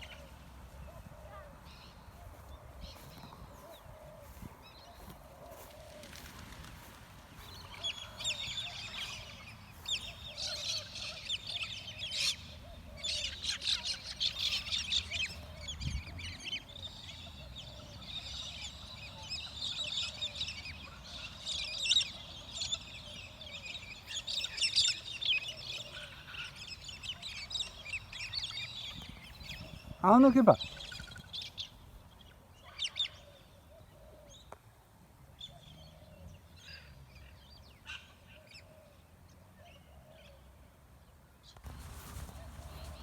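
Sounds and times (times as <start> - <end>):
flock of birds chattering: 0.0 - 31.7, 41.6 - 43.0.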